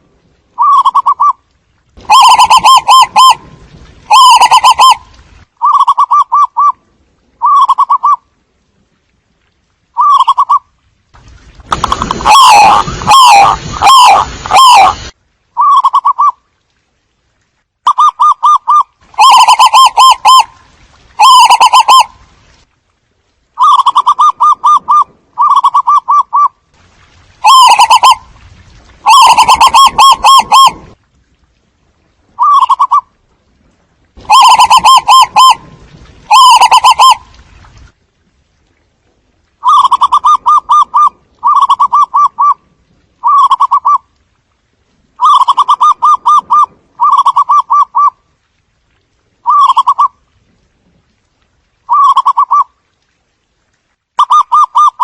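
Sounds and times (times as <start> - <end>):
doves cooing: 21.2 - 22.1, 34.3 - 35.6, 36.3 - 37.2, 45.2 - 48.2, 51.9 - 52.7.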